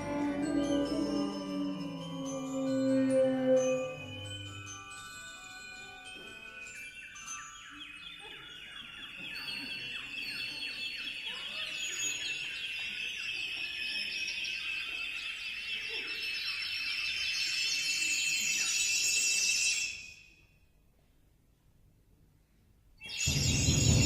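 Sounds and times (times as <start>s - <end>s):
chamber ensemble playing: 0.0s - 6.8s.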